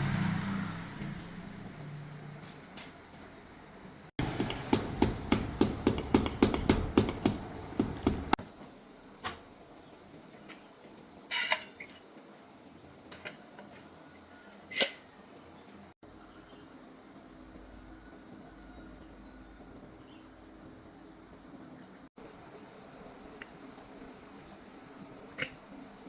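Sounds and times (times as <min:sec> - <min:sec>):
rapid sharp knocks: 0:04.2 - 0:08.4.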